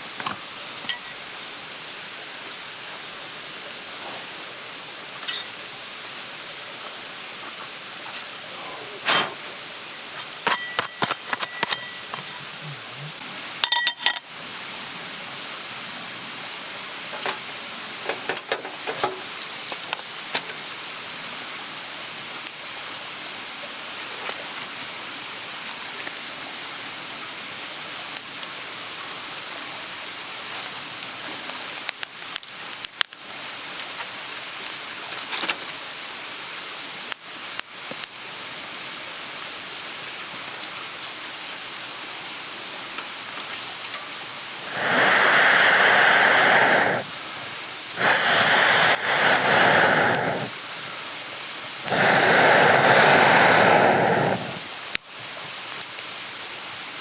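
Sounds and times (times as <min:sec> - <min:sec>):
steady rushing hiss: 0:00.0 - 0:13.6, 0:44.0 - 0:55.5
cookware clinking: 0:10.5 - 0:12.3, 0:13.6 - 0:14.2.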